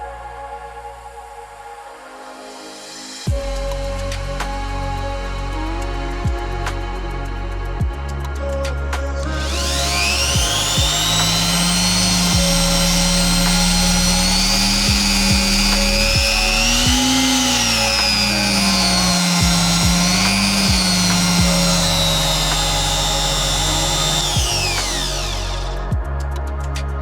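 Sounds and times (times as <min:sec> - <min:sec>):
background music: 0:00.0 - 0:27.0
trim router motor whine: 0:09.3 - 0:26.0.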